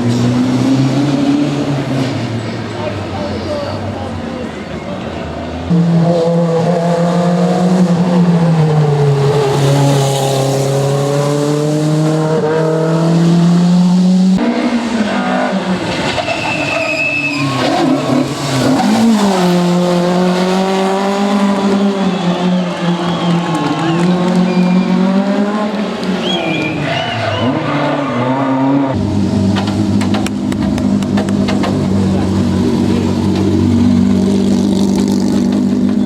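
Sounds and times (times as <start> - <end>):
rally car engine at high revs: 0.0 - 3.4, 5.5 - 36.0
brief high squeal: 16.2 - 17.9.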